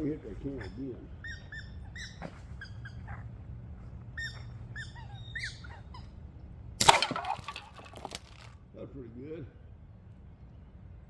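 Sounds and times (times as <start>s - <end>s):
slingshot rifle shot: 6.8s - 8.4s.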